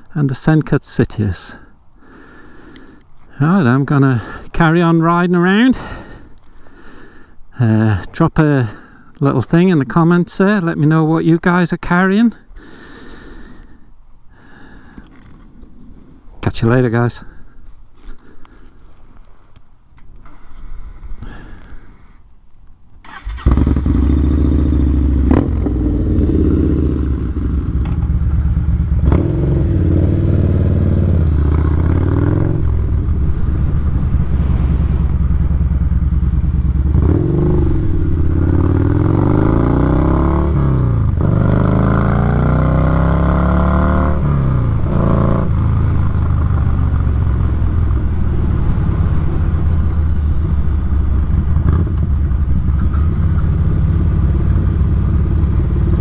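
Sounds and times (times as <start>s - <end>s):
motorcycle engine starting and revving: 23.0s - 56.0s.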